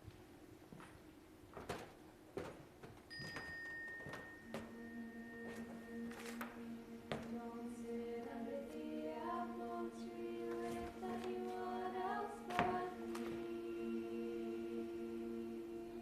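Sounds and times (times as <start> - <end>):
choir-like voices music: 4.1 - 16.0.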